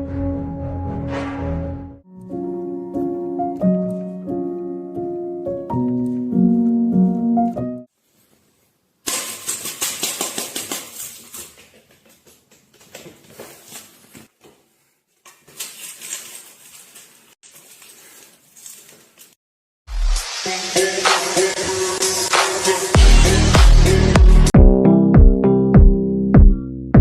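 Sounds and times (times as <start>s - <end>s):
plinking keyboard music: 2.1s - 7.9s
rustling noise: 7.9s - 19.4s.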